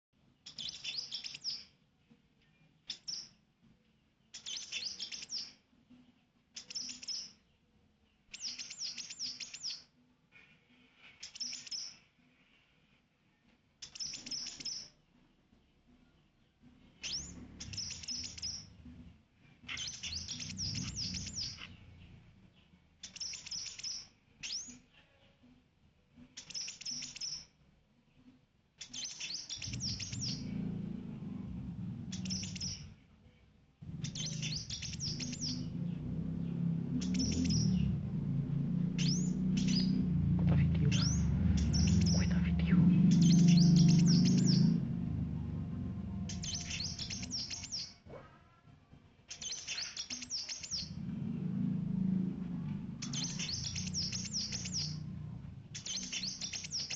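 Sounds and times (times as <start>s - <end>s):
bird chirping: 0.0s - 48.4s, 49.2s - 56.9s
low rumble: 20.1s - 22.6s, 29.6s - 47.9s, 50.6s - 56.9s.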